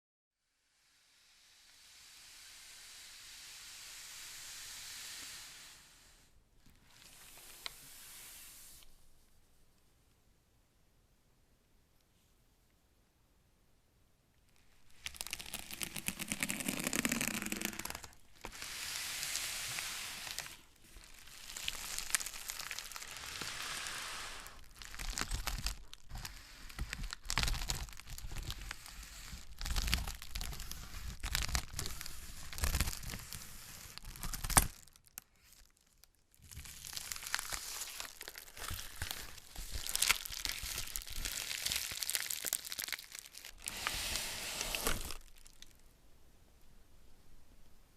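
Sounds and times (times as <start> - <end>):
plastic shrink wrap crinkling: 14.5 - 45.9.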